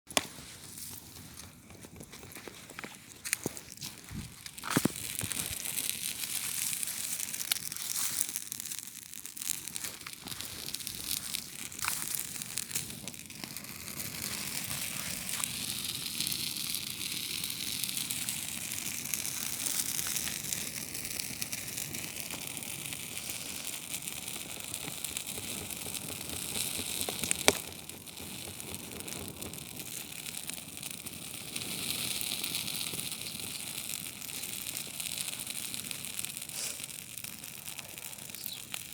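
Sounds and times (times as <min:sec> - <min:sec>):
campfire crackling: 0:00.1 - 0:38.9
sharp pop of fire: 0:24.3 - 0:30.0.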